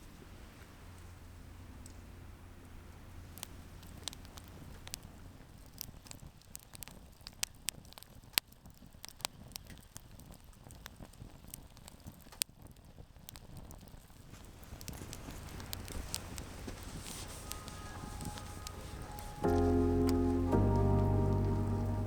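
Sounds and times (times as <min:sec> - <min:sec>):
campfire crackling and popping: 0:02.6 - 0:22.0.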